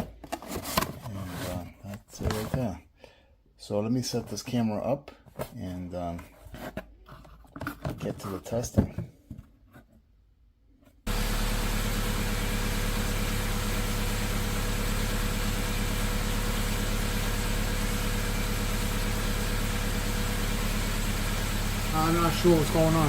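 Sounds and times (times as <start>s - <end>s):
car engine idling: 11.1s - 23.0s.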